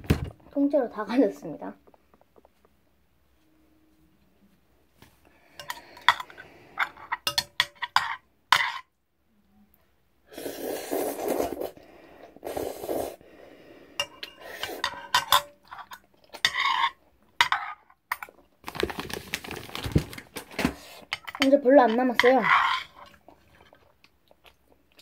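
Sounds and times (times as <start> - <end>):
utensils clinking against bowl: 5.6 - 8.8, 14.0 - 17.7.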